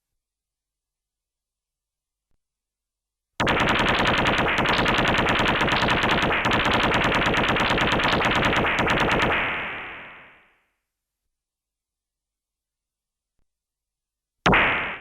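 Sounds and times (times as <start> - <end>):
stun gun electric crackle: 3.4 - 10.4.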